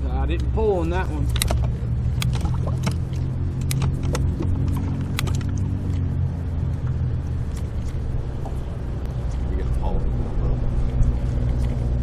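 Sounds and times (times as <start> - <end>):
boat motor humming: 0.0 - 12.0
sharp clicks: 1.2 - 6.0.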